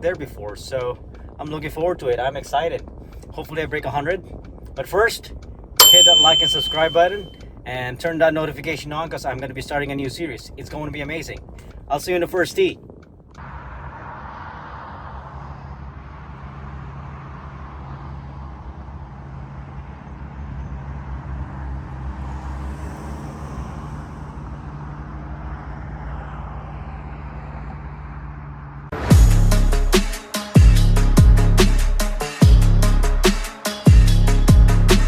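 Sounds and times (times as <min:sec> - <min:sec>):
car engine hum and road noise: 0:00.0 - 0:07.7, 0:12.8 - 0:29.6
loud electronic music: 0:29.0 - 0:35.0.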